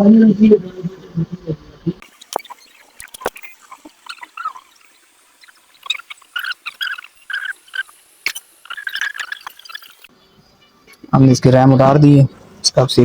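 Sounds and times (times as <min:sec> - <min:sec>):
solder flux bubbling and crackling: 0:00.7 - 0:10.1
sharp clicks: 0:02.0 - 0:10.1.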